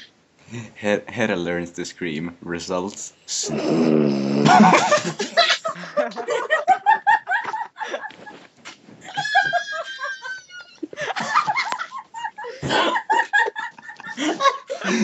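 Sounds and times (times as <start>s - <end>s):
high-pitched squealing laugh: 4.4s - 8.4s, 9.0s - 15.0s
people laughing over a call: 4.4s - 8.4s, 9.1s - 15.0s.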